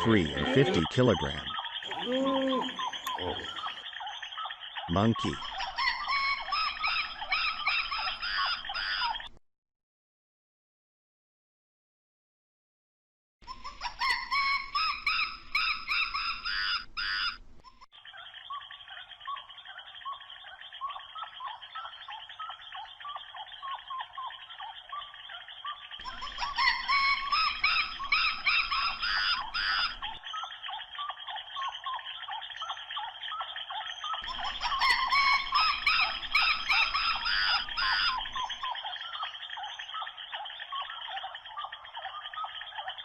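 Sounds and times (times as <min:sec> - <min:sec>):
sharp high animal calls: 0:00.0 - 0:09.3, 0:19.7 - 0:42.9
chorus of chirping animals: 0:00.0 - 0:09.4, 0:13.4 - 0:43.0.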